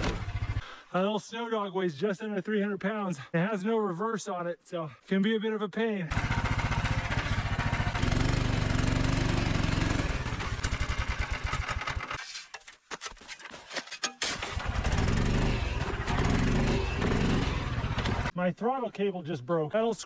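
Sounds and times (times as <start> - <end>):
small snow machine engine running: 0.0 - 0.6, 6.1 - 12.2, 14.4 - 18.3.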